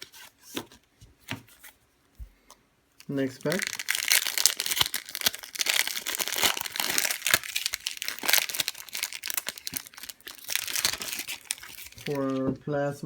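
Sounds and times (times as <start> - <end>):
foil wrapper crinkling and tearing: 3.0 - 12.5.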